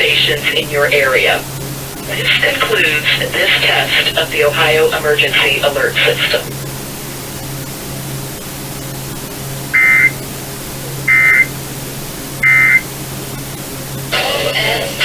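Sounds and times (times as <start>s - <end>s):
radio hum and hiss: 0.0s - 15.0s
digital data bursts: 9.8s - 10.2s, 11.0s - 11.5s, 12.4s - 12.9s.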